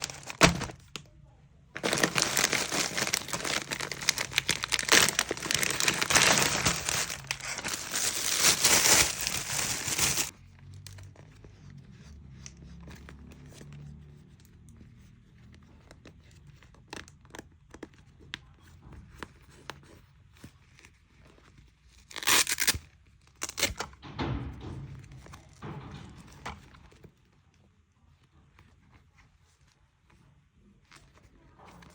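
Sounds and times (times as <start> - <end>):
packaging crinkling and tearing: 0.0 - 1.0, 1.8 - 10.3, 22.0 - 22.8
handling clicks and rustles: 0.0 - 1.1, 1.8 - 10.3.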